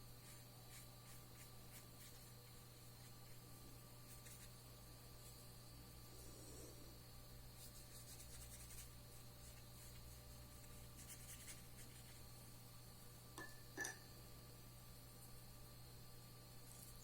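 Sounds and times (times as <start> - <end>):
brush strokes on paper: 0.0 - 5.6, 7.5 - 12.6.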